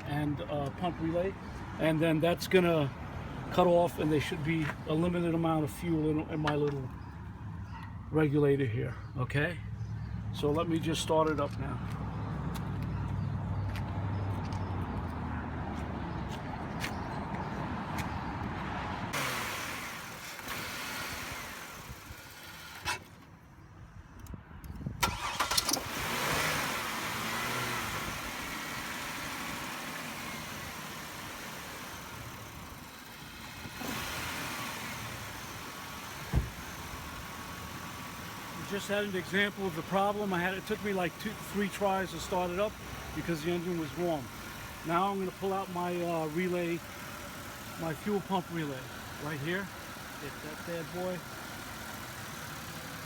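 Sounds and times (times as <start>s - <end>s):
starter motor cranking: 25.0s - 27.0s
car engine running: 25.0s - 53.0s.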